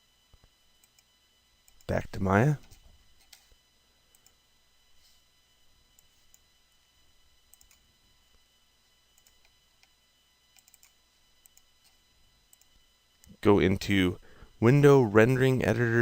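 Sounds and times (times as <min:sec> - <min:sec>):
computer mouse clicks: 0:00.8 - 0:01.1, 0:02.6 - 0:03.5, 0:04.1 - 0:04.4, 0:07.5 - 0:07.8, 0:09.2 - 0:13.4.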